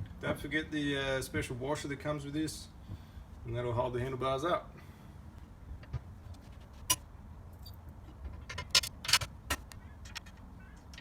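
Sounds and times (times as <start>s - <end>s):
metallic clicks and knocks: 7.6s - 11.0s.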